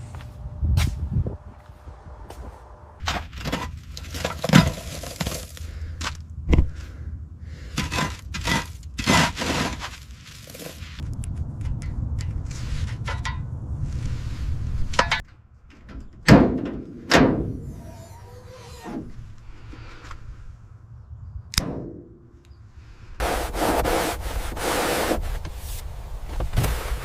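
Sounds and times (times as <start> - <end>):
steady low rumble: 0.0 - 15.7
scraping strokes: 7.7 - 11.0.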